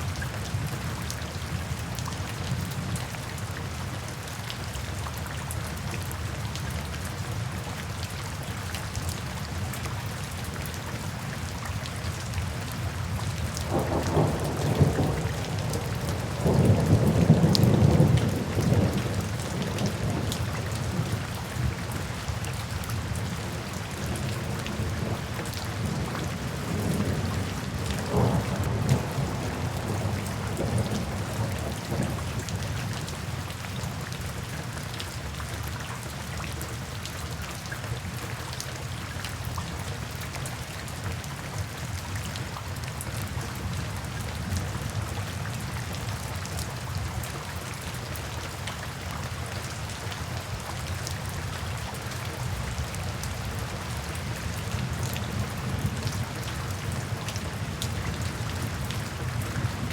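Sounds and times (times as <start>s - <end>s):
steady rain: 0.0s - 59.9s
low thunder rumble: 13.7s - 20.3s, 25.8s - 32.4s.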